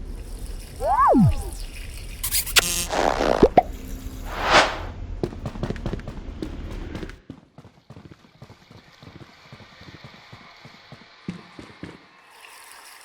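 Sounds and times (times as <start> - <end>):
whoosh: 0.8 - 1.6, 4.3 - 4.9.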